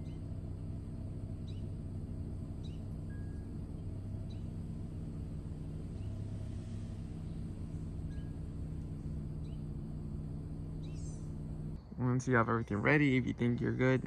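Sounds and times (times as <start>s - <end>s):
bird chirps: 0.0s - 0.3s, 1.3s - 4.6s, 5.9s - 6.4s, 7.2s - 10.0s, 10.6s - 12.0s
car engine idling: 0.0s - 14.0s.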